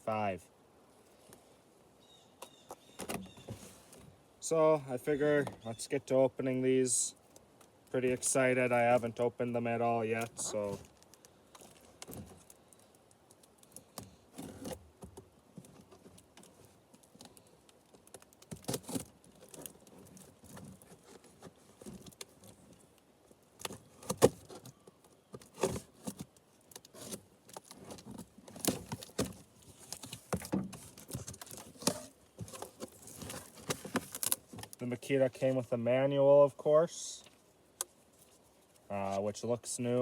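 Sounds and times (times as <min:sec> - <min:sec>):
packaging rustling and crinkling: 0:10.1 - 0:14.8, 0:15.6 - 0:22.9, 0:23.6 - 0:34.8.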